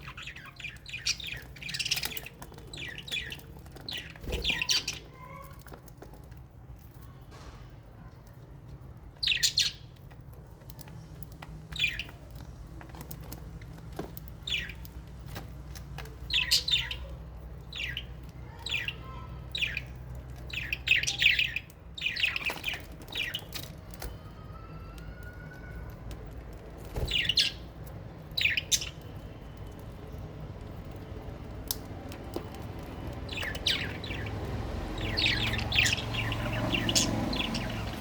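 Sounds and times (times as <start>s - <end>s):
parrots chirping: 0.0s - 5.8s, 9.2s - 9.9s, 11.7s - 12.4s, 14.3s - 15.4s, 16.1s - 25.2s, 27.0s - 30.3s, 31.5s - 38.0s.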